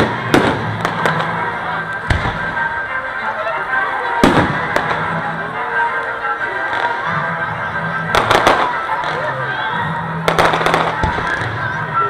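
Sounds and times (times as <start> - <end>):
fireworks bangs: 0.0 - 2.8, 4.2 - 5.3, 8.1 - 9.4, 10.2 - 11.9
continuous background sound: 0.0 - 12.0.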